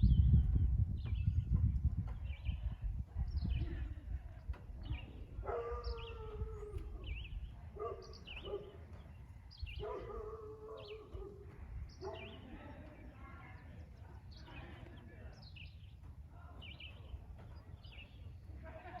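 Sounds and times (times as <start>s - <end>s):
wind rumble on microphone: 0.0s - 18.9s
small birds chirping: 0.0s - 19.0s.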